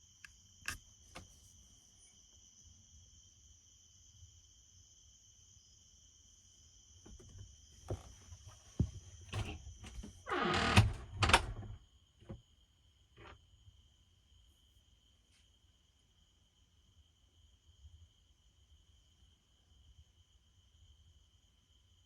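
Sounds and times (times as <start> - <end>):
insects chirring: 0.0 - 14.7
knocks and thumps: 7.1 - 12.4.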